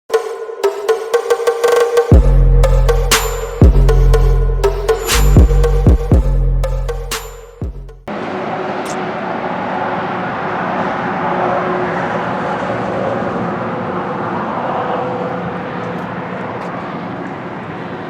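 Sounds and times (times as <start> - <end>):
machine running with loud rush: 8.1 - 18.0.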